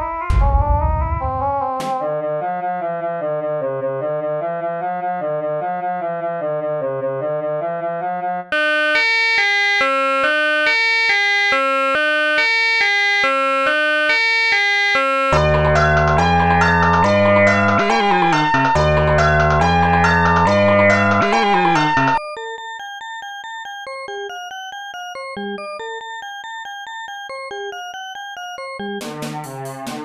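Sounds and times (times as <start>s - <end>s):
synthesizer keyboard notes: 0.0s - 2.2s, 8.6s - 22.6s.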